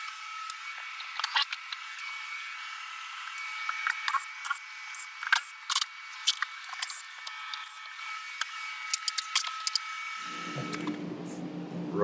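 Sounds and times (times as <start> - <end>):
hand demolition clicks and scrapes: 8.4 - 9.8
steady high hum: 9.5 - 12.0.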